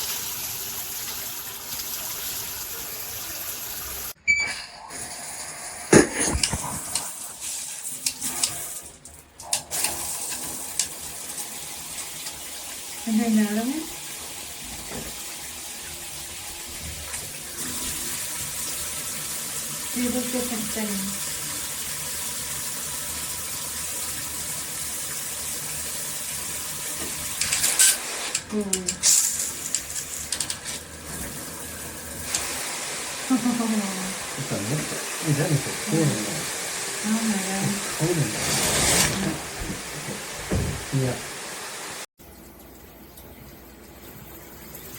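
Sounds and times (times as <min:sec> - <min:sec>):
shower spraying water: 0:00.0 - 0:04.2, 0:04.9 - 0:44.9
shower head clicks and knocks: 0:29.7 - 0:30.7.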